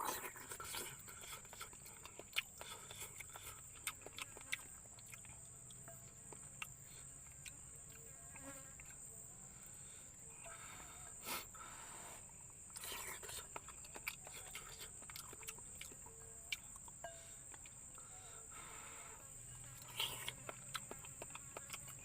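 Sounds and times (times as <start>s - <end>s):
insects calling: 0.0s - 22.0s.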